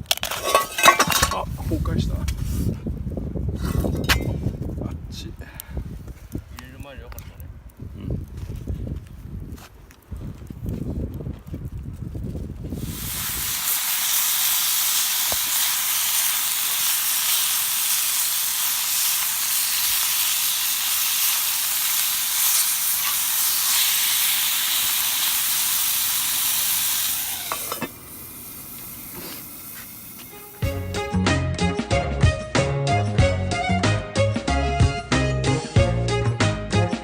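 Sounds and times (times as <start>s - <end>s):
food sizzling on a grill: 12.7s - 30.9s.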